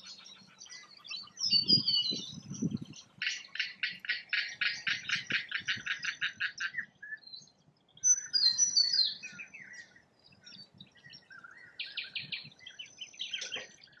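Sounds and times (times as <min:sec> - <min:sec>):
bird chirping rapidly: 0:00.0 - 0:07.0.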